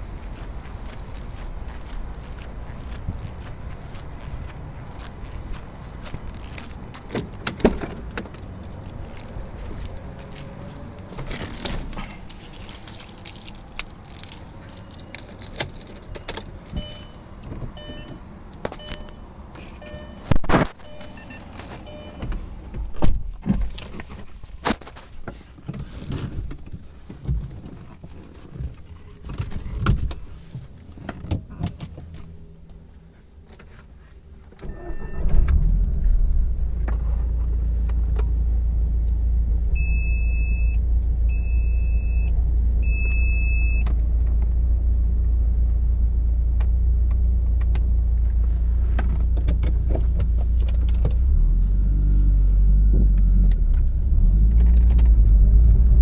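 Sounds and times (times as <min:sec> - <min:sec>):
car engine starting and idling: 0:00.0 - 0:56.0
keys clicking and knocking: 0:12.4 - 0:20.2
short electronic beeps: 0:16.8 - 0:22.4, 0:34.7 - 0:35.3, 0:39.8 - 0:43.9.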